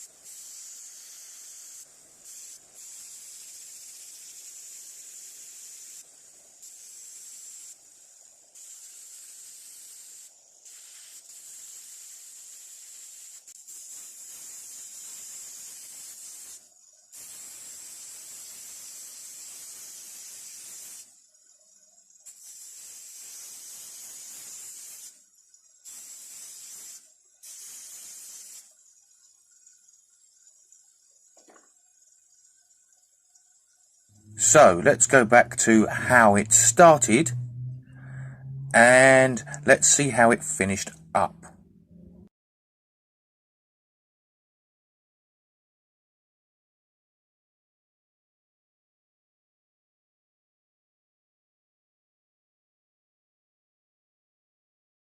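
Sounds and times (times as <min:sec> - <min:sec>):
spraying hiss: 0:00.0 - 0:21.2, 0:22.2 - 0:25.2, 0:25.8 - 0:28.8.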